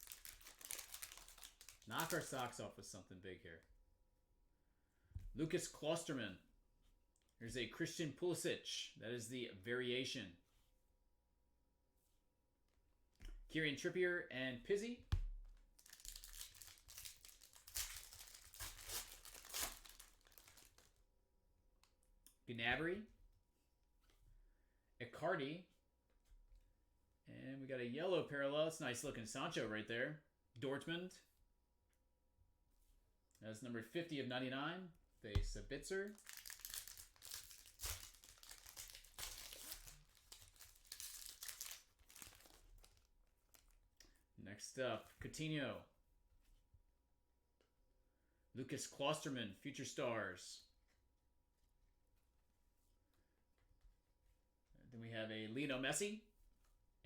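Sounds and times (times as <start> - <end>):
foil wrapper tearing and crinkling: 0.0 - 2.3, 15.8 - 20.9, 36.1 - 43.7.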